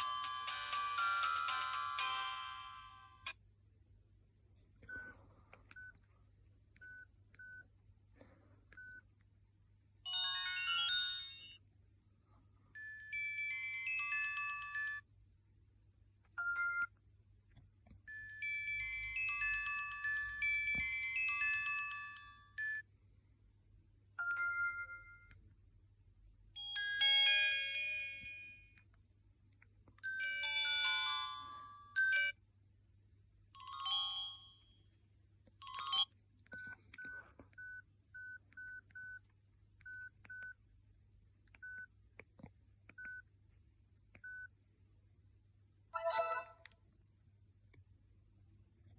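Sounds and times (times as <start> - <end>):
phone ringtone melodies: 0.0 - 3.4, 10.1 - 11.6, 12.8 - 15.1, 18.1 - 22.9, 26.6 - 28.7, 30.0 - 32.4, 46.0 - 46.7.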